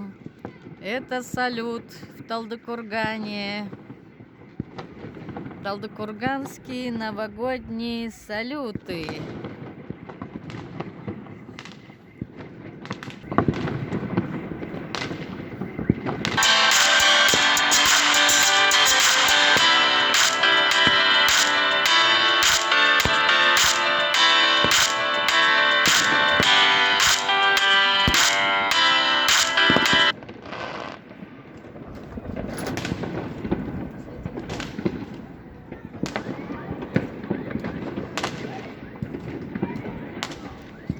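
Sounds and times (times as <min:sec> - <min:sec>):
fireworks bangs and crackles: 0:00.0 - 0:40.9
fireworks hissing: 0:15.1 - 0:31.0
music: 0:16.4 - 0:30.1.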